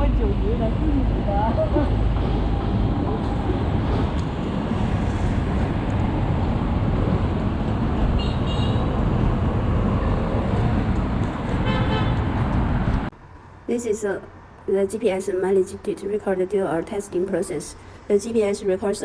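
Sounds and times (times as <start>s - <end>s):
wind rumble on microphone: 0.0s - 13.1s
road traffic noise: 0.0s - 19.0s.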